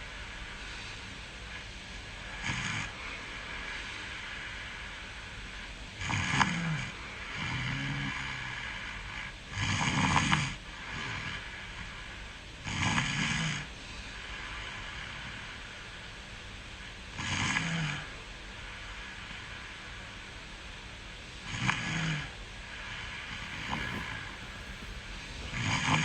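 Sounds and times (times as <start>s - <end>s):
soft breath: 23.2s - 26.0s
person snoring: 23.3s - 26.0s.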